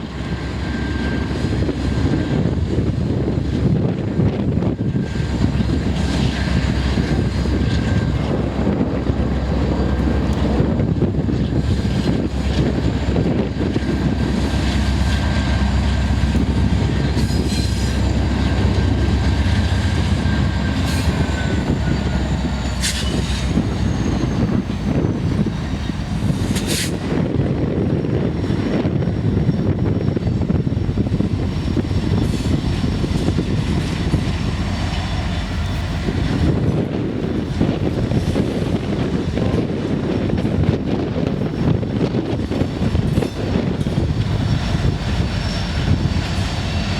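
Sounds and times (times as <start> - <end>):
locomotive engine rumble: 0.0 - 46.9
wheels on rail noise: 0.0 - 46.9
thin squeal: 17.1 - 19.0, 20.0 - 25.9, 44.4 - 46.5.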